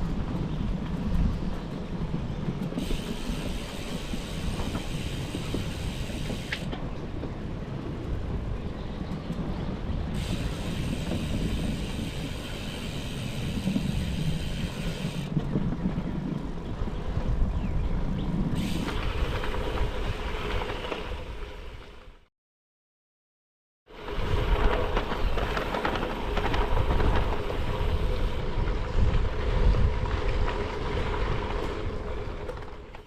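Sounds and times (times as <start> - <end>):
bicycle tyres on gravel: 0.0 - 7.0, 10.1 - 22.2, 23.9 - 33.0
wind blowing across microphone: 0.0 - 22.2, 23.9 - 33.0
high hiss: 10.2 - 15.2.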